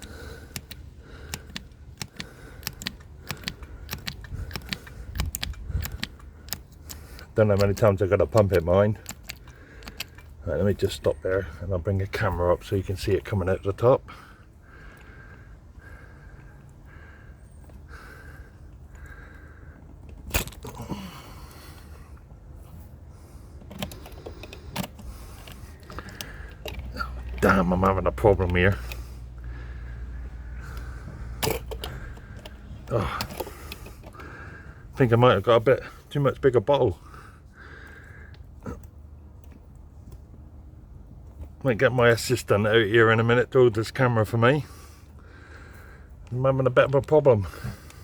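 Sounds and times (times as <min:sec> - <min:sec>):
hand pump clicking: 0:00.0 - 0:11.3, 0:18.7 - 0:20.9, 0:23.6 - 0:35.5
low steady background: 0:00.0 - 0:48.0.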